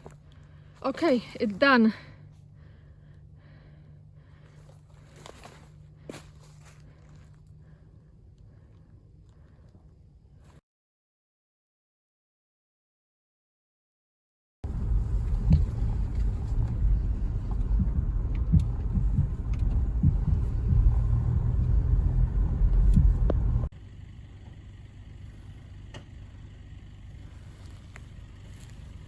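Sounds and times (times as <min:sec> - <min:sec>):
vehicle rumbling: 0:00.0 - 0:10.6, 0:14.6 - 0:29.0
knocks and clicks: 0:14.8 - 0:23.7.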